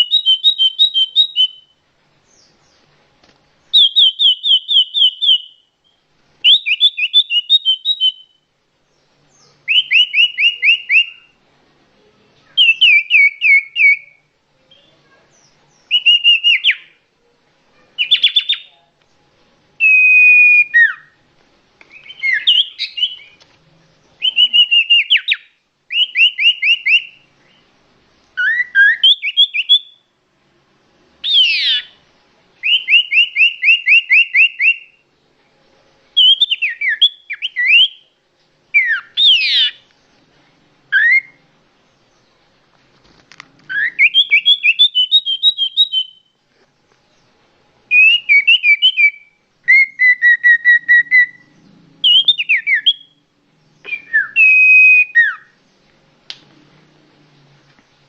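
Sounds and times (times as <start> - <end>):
bird whistling song: 0.0 - 2.8, 3.6 - 11.4, 12.5 - 17.0, 18.0 - 18.8, 19.8 - 21.2, 21.9 - 23.4, 24.2 - 27.7, 28.4 - 30.1, 31.2 - 32.0, 32.6 - 35.0, 36.1 - 39.9, 40.9 - 41.4, 43.7 - 46.4, 47.9 - 55.6.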